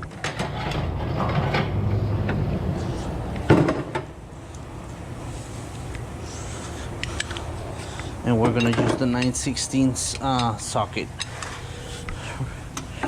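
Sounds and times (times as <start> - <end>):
steady low hum: 0.2 - 13.0
hand tools clicking: 7.0 - 9.5, 10.1 - 12.2.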